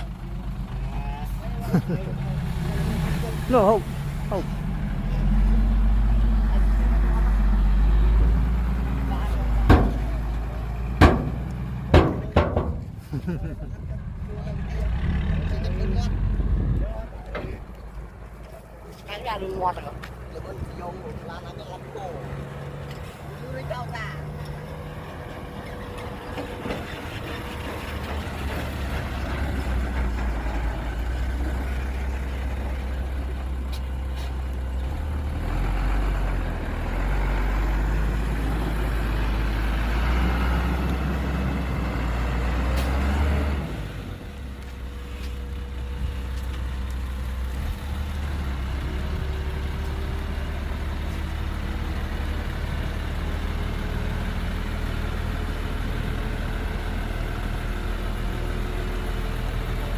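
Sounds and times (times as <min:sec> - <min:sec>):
heavy diesel machinery engine drone: 0:00.0 - 0:59.9.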